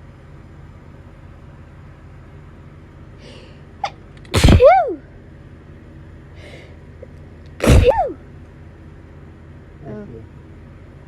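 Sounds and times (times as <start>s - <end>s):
person sneezing loudly: 3.8s - 5.0s, 7.6s - 8.2s.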